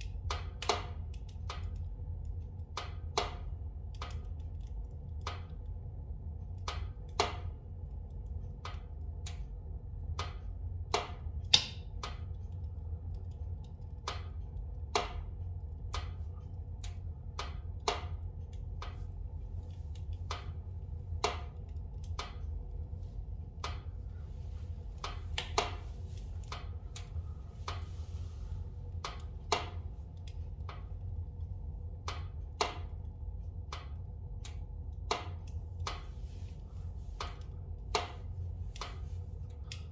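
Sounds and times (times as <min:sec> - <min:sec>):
logs crackling in fireplace: 0:00.0 - 0:39.9
low rumble of fire: 0:00.0 - 0:39.9.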